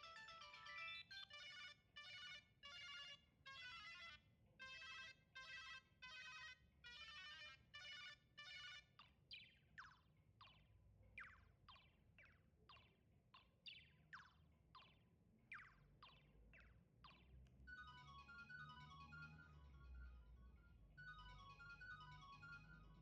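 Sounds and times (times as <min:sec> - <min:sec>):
phone ringtones through speaker: 0:00.0 - 0:04.0, 0:17.7 - 0:23.0.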